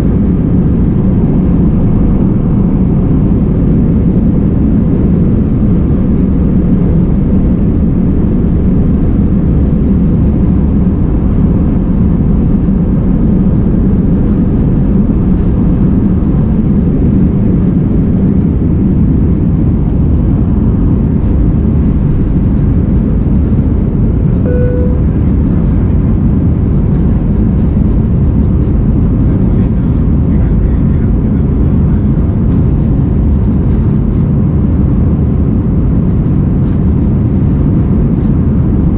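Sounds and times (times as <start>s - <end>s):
jet engine cabin drone: 0.0s - 38.9s
short tone: 24.4s - 25.6s.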